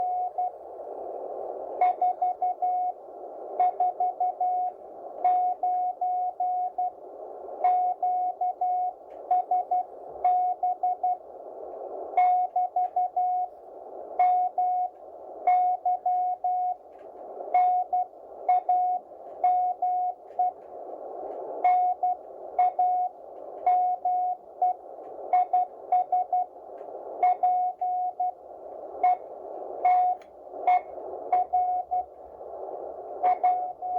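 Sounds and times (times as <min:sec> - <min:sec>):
radio band hiss: 0:00.0 - 0:33.9
morse code tone: 0:29.0 - 0:32.1, 0:33.2 - 0:33.9.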